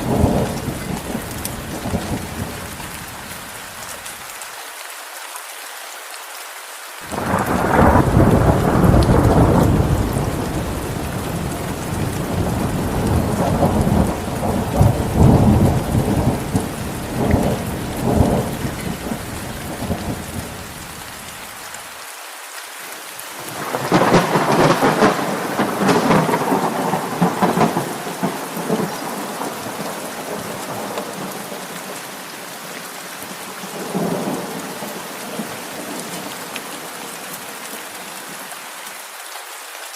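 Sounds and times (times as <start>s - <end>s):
rolling thunder: 0.0s - 2.9s, 7.1s - 21.0s, 23.5s - 31.8s
steady rain: 0.0s - 39.9s.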